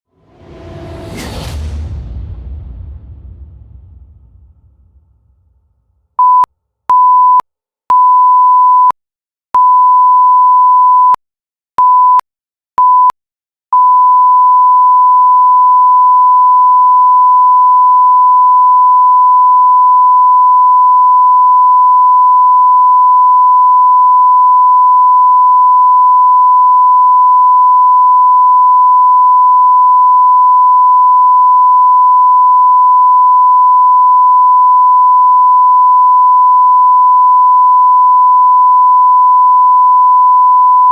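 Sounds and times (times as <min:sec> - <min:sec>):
censor bleep tone: 0:06.2 - 0:09.0, 0:09.6 - 0:11.2, 0:11.8 - 0:12.2, 0:12.8 - 0:40.9.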